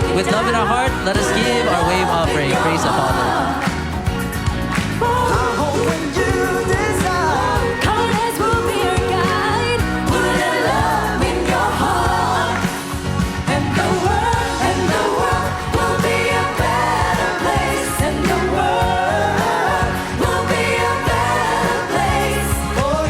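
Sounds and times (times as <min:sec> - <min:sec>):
person singing worship song: 0:00.0 - 0:03.7, 0:04.9 - 0:23.0.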